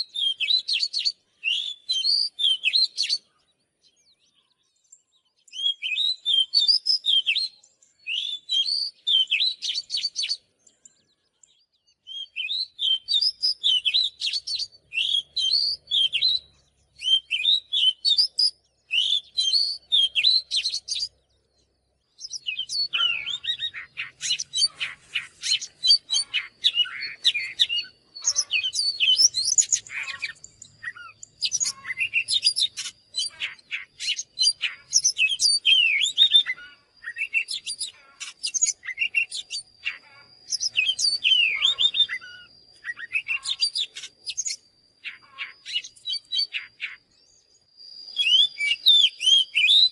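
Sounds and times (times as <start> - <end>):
bird singing whistled notes: 0.0 - 49.9.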